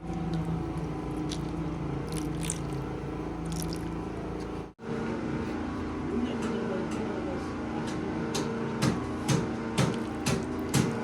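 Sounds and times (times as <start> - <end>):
machine hum: 0.0 - 6.1.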